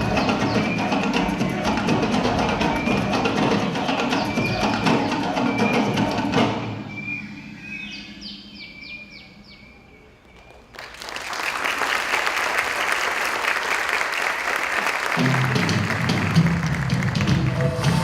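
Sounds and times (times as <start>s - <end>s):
bird chirping: 2.6s - 10.7s.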